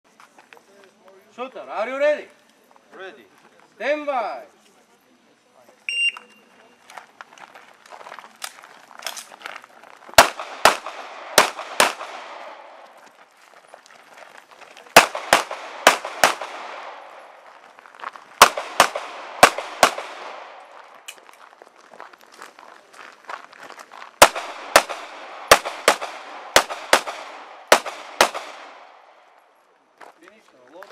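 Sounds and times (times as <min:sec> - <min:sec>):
pistol shots: 0:10.2 - 0:12.8, 0:14.9 - 0:17.3, 0:18.4 - 0:20.7, 0:24.2 - 0:29.2.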